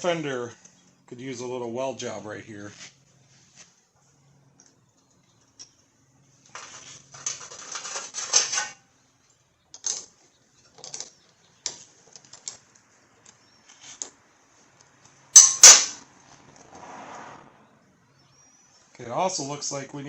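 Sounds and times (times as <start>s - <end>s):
metal tools clattering: 6.6s - 8.9s.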